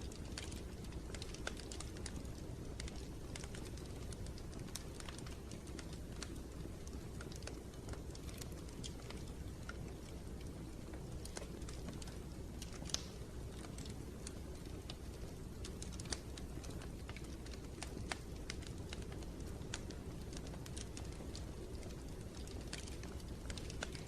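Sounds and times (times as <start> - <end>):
fire crackling and popping: 0.0 - 24.0
fire rumbling: 0.0 - 24.0.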